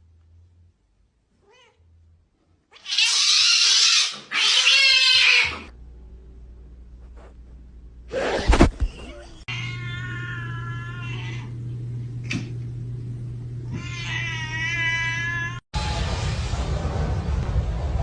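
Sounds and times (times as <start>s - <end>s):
cat yowling: 2.7s - 5.7s, 9.1s - 11.5s, 13.7s - 15.6s
low hum: 5.7s - 9.5s, 10.4s - 13.8s, 15.8s - 18.0s.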